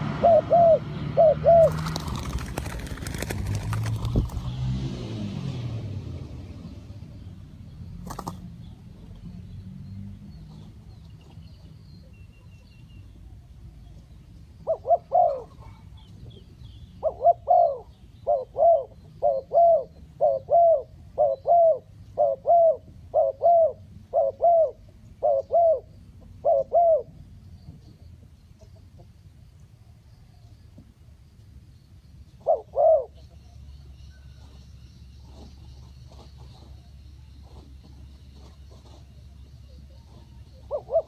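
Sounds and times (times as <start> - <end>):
dove cooing: 0.0 - 4.2, 14.6 - 16.1, 17.0 - 27.2, 32.4 - 34.5, 38.8 - 41.0
small birds chirping: 6.5 - 41.0.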